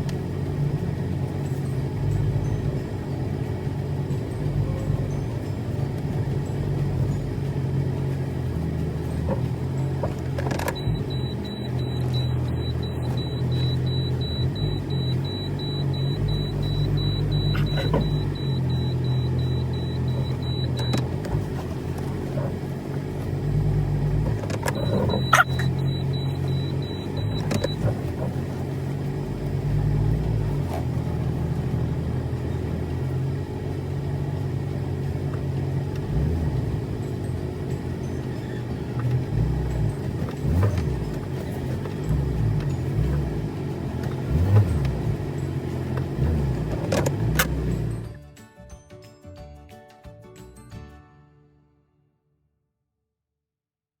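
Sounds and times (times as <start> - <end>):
car engine running: 0.0 - 48.2
faint high tone: 10.8 - 21.0.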